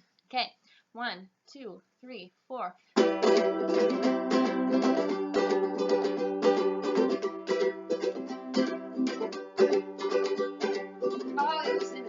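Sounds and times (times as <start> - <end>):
person counting in: 0.3 - 2.8
ukulele strumming chords: 3.0 - 12.0.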